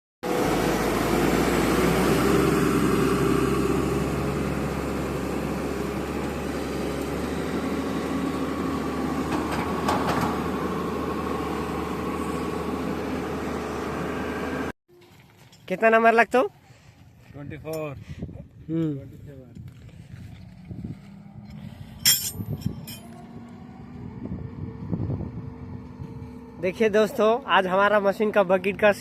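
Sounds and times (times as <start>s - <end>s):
excavator diesel engine running: 0.2s - 14.7s, 20.4s - 29.0s.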